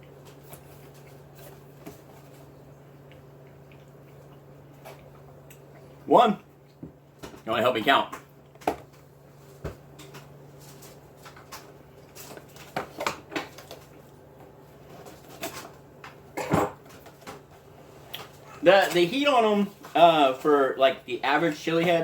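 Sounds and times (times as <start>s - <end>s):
low steady hum: 0.0s - 22.0s
eating clicks and mouth noises: 2.7s - 6.8s.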